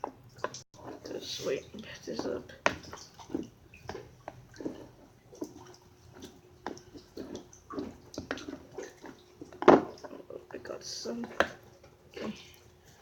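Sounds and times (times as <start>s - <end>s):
slime wet squelches: 0.4s - 13.0s.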